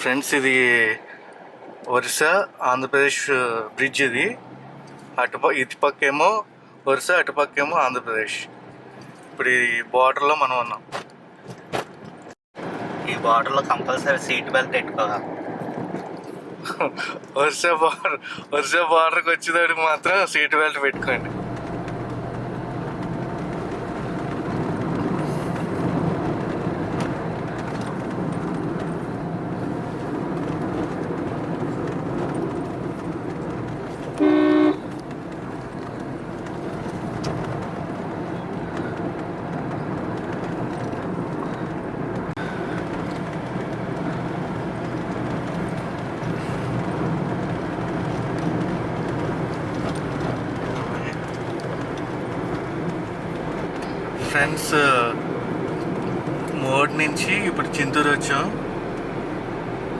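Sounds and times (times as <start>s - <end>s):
car engine and road noise: 0.0s - 59.9s
vehicle horn honk: 34.2s - 35.0s.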